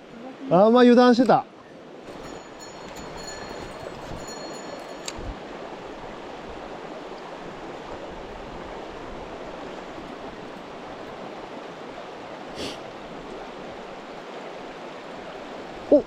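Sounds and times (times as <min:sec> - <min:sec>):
stream water rushing: 0:00.0 - 0:16.0
short sharp hiss: 0:12.6 - 0:12.8.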